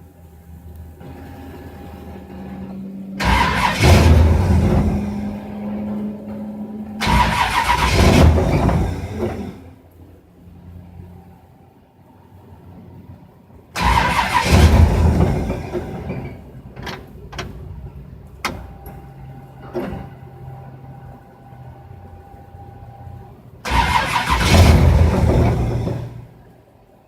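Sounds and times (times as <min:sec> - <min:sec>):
engine cranking: 0:03.2 - 0:09.7, 0:13.8 - 0:19.0, 0:23.6 - 0:26.4.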